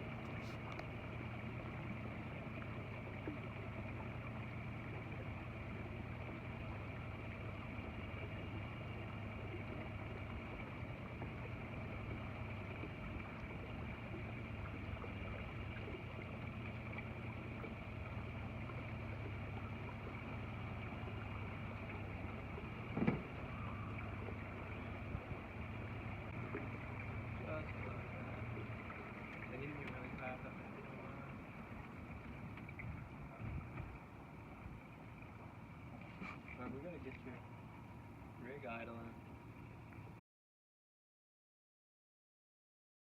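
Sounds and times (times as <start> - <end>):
boat motor running: 0.0 - 40.2.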